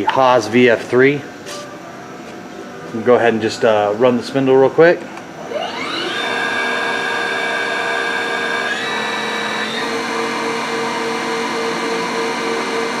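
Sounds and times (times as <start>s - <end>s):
machining spindle whining: 5.4s - 13.0s.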